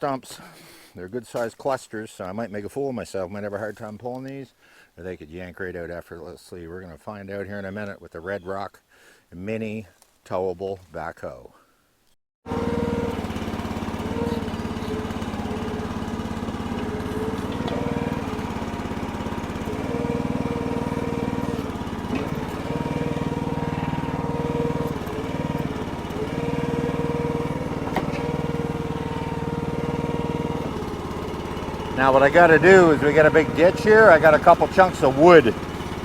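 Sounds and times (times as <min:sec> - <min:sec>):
small gas engine running: 0:12.5 - 0:36.0.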